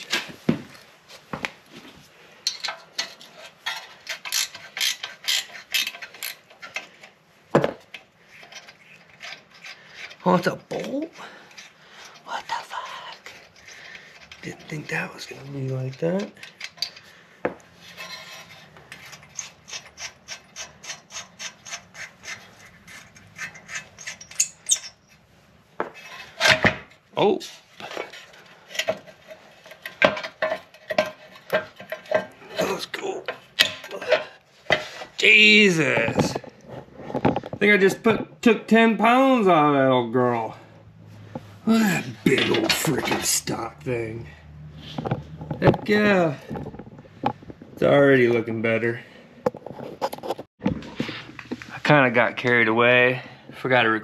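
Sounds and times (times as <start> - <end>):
ratchet wrench clicking: 4.1 - 6.4
metal scrape: 13.2 - 37.6.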